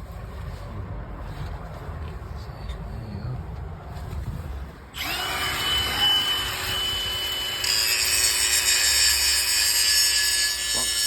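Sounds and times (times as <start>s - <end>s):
power tool whining: 5.0s - 11.0s.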